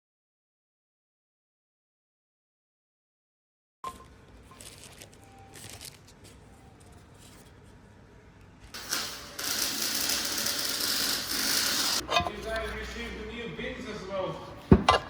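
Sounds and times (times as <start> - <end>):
rustling of packaging: 4.0 - 7.8
tearing strokes: 4.6 - 6.5.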